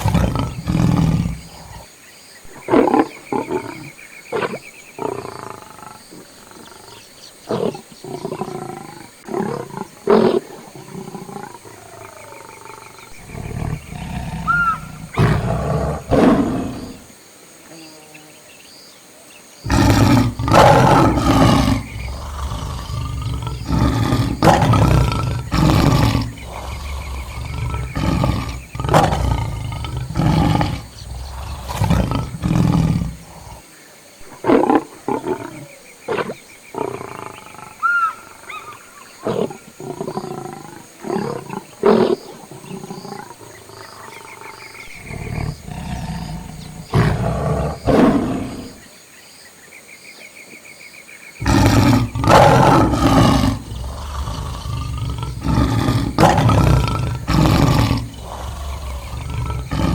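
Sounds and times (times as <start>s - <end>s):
lions roaring and growling: 0.0s - 1.9s, 7.5s - 17.1s, 19.7s - 33.6s, 39.2s - 48.8s, 51.4s - 59.9s.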